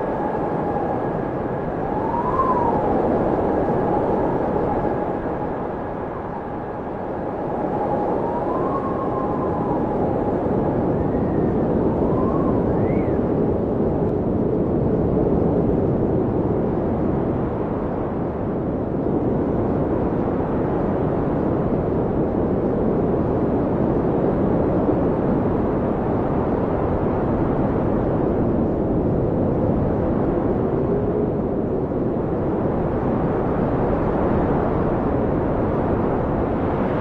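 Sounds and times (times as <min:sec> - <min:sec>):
faint howling whistles: 0:00.0 - 0:13.8
blizzard wind rushing: 0:00.0 - 0:37.0.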